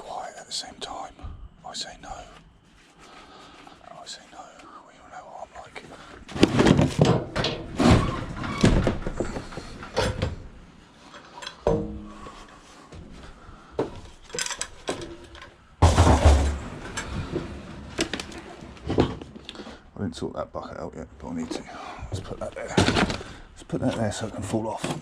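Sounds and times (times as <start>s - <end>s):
heavy thud: 15.8s - 16.7s.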